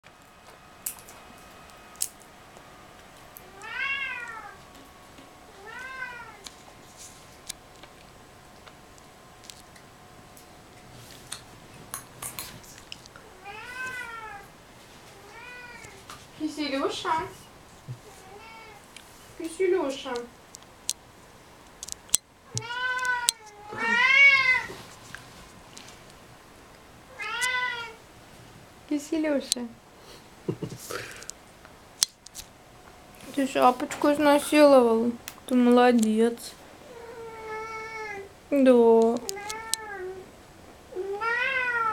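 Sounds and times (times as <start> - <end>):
cat meowing: 3.4 - 4.6, 5.5 - 6.4, 13.3 - 14.5, 15.1 - 16.0, 18.1 - 18.8, 22.5 - 24.8, 27.1 - 28.0, 36.8 - 38.3, 39.2 - 40.3, 40.9 - 41.9.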